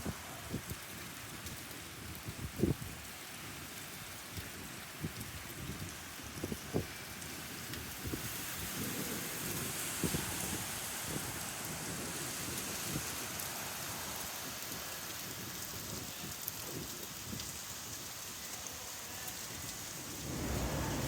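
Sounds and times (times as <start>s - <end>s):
heavy rain hissing: 0.0s - 3.3s, 6.2s - 21.0s
wind buffeting microphone: 7.6s - 13.8s, 19.8s - 21.0s.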